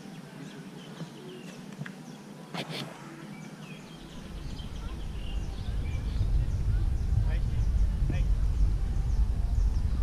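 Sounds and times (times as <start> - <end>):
birds chirping: 0.0 - 10.0
low rumble: 3.8 - 10.0.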